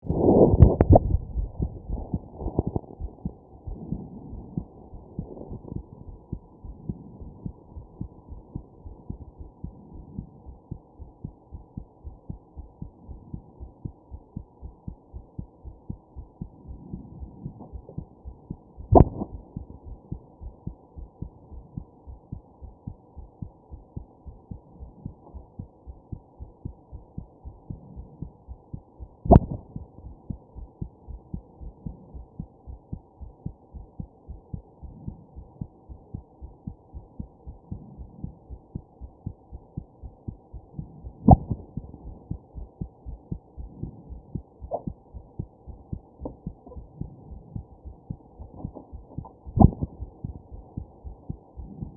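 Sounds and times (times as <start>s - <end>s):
muffled heartbeat: 0.0s - 51.9s.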